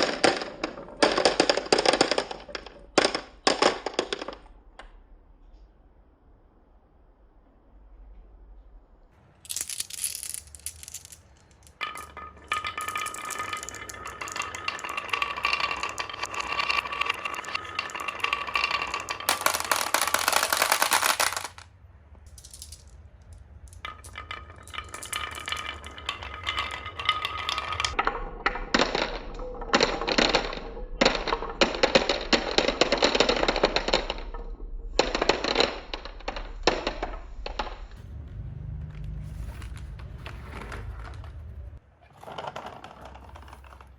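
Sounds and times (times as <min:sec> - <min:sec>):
marbles rolling and clattering: 0:00.0 - 0:04.6, 0:09.3 - 0:43.9.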